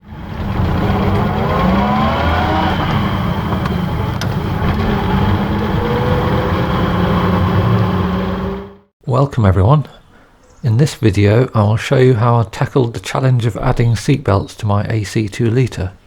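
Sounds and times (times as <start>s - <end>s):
car engine driving: 0.0s - 8.9s.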